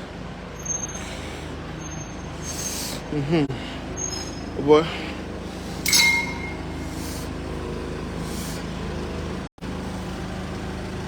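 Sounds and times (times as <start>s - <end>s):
vehicle engine running: 0.0s - 11.0s
short hisses: 2.4s - 3.1s, 5.5s - 7.4s.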